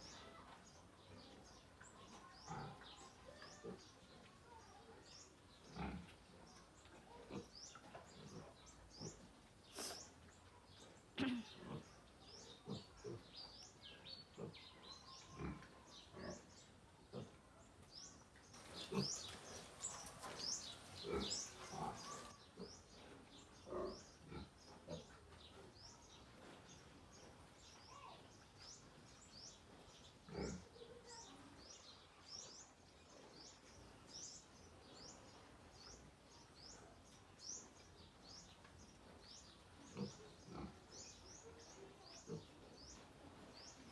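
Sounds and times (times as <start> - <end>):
piglets grunting: 2.4 - 4.0, 5.6 - 6.1, 7.2 - 10.1, 11.2 - 13.4, 14.4 - 17.4, 18.6 - 22.8, 23.6 - 25.2, 30.3 - 30.7, 39.9 - 41.1, 42.1 - 42.7
bird chirping: 17.9 - 25.0
piglets chewing: 18.6 - 22.4.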